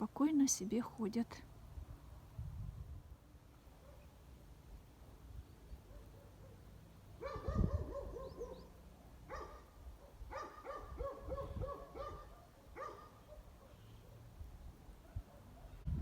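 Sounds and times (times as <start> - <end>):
dog yapping: 7.2 - 8.7, 9.3 - 9.6, 10.3 - 13.7.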